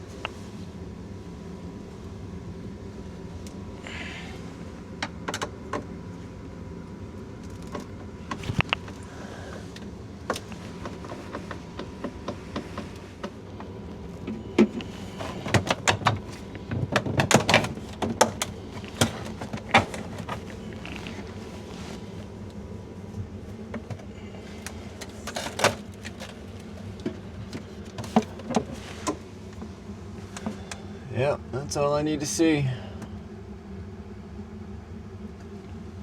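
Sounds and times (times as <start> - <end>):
steady background hum: 0.0 - 36.0
items clattering in refrigerator: 7.4 - 22.3, 23.3 - 29.3.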